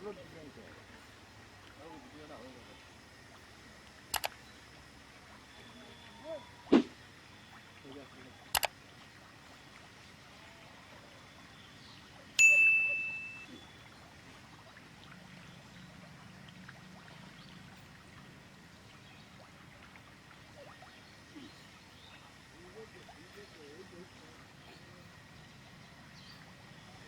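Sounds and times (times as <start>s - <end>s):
short clicks: 4.1s - 4.4s, 8.5s - 8.8s
bright metallic ding: 12.4s - 13.6s.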